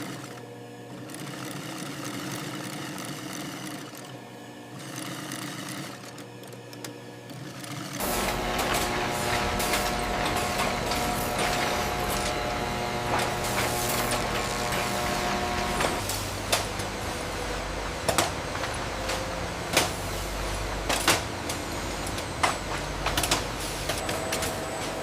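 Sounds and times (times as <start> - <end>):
machinery running: 8.0 - 25.0.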